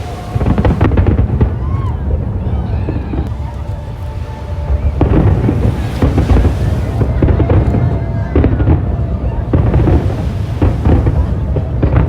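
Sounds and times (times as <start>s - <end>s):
deep rumble: 0.0s - 12.0s
fireworks bangs and booms: 0.0s - 12.0s.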